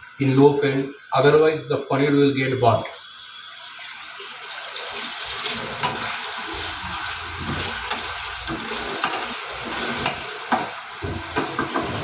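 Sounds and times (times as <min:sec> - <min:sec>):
cheese frying in oil: 0:00.0 - 0:12.0.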